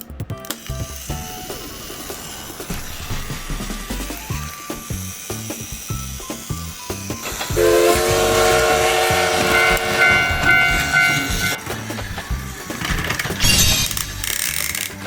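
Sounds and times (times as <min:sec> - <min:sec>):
rhythmic clicking beat: 0:00.0 - 0:15.0
toy electronic horn chord: 0:06.8 - 0:11.8.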